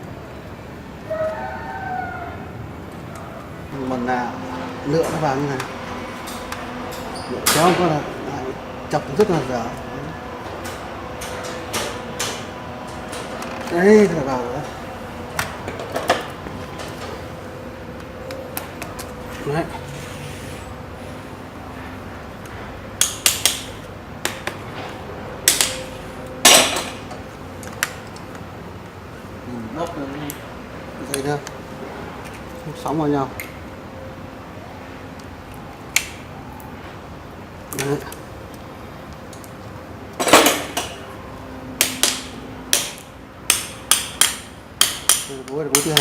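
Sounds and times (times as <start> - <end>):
metal scrape: 19.8 - 20.8
tool tapping on metal: 41.8 - 46.0.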